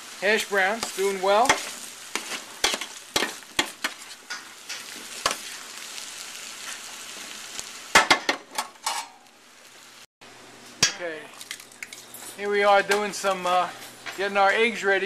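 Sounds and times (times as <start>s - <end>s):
potatoes sizzling in pan: 0.0s - 15.0s
utensil scraping and clacking pan: 0.8s - 5.4s.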